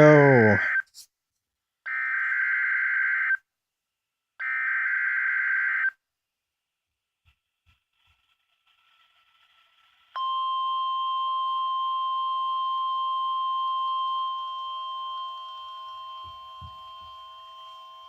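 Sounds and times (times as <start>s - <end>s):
high steady warning beep: 10.2s - 18.0s.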